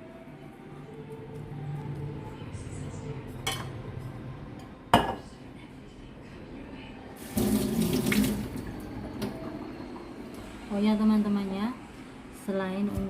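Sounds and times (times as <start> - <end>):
kitchen tap running into sink: 7.2 - 9.6.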